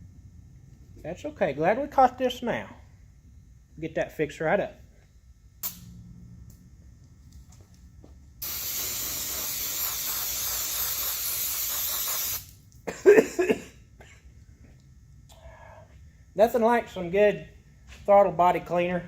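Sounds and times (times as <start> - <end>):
aerosol spray hiss: 8.4 - 12.6.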